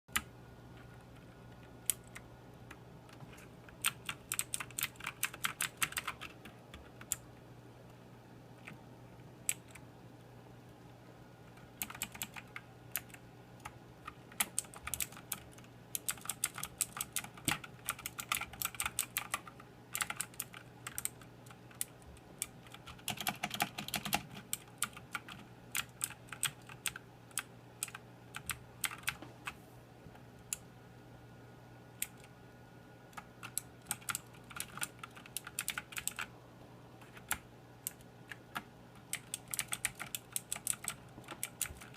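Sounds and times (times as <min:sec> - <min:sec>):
mechanical keyboard typing: 0:00.1 - 0:07.2, 0:09.4 - 0:09.8, 0:11.4 - 0:29.6, 0:33.1 - 0:36.3, 0:37.0 - 0:41.9
faint low hum: 0:00.1 - 0:41.9.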